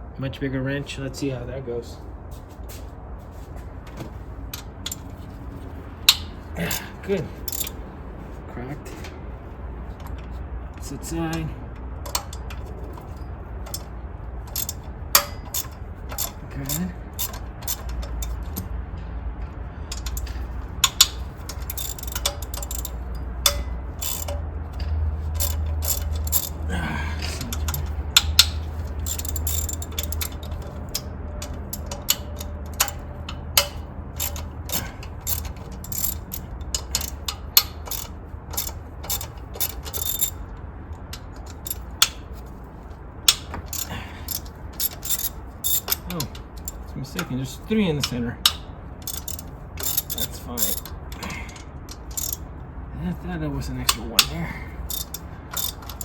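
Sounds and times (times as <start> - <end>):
ratchet wrench clicking: 4.5 - 5.1, 6.1 - 7.8, 12.0 - 18.8, 19.9 - 26.7, 27.4 - 42.5, 43.2 - 47.3, 48.0 - 52.5, 53.8 - 56.0.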